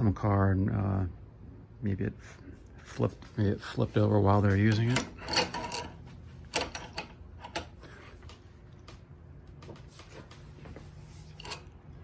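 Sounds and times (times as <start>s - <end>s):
metal tools clicking and knocking: 4.5s - 7.8s, 11.3s - 11.8s.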